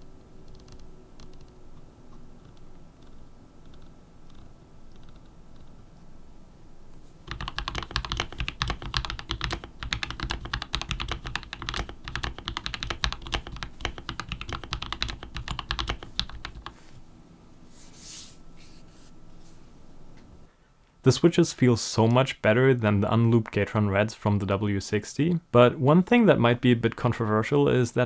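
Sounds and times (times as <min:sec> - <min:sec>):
mechanical keyboard typing: 0:00.4 - 0:01.8, 0:07.3 - 0:16.8.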